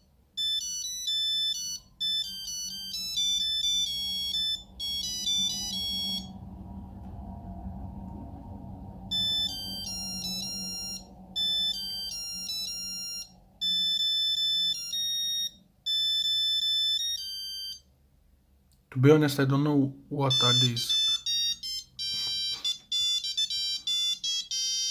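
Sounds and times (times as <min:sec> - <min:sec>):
monophonic phone ringtone: 0:00.0 - 0:06.4, 0:09.1 - 0:17.9, 0:20.2 - 0:24.9.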